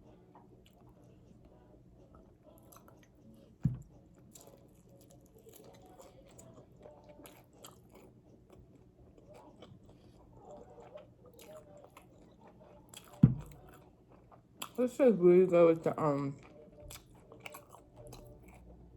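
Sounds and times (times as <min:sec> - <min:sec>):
chewing crispy fried chicken: 0:00.0 - 0:18.9.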